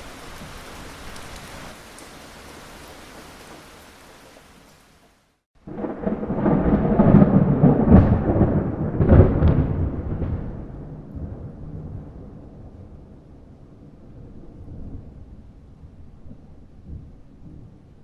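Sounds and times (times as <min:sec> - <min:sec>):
rain: 0:00.0 - 0:18.0
thunder rumbling: 0:05.6 - 0:18.0
sharp thunder cracks: 0:05.7 - 0:12.9.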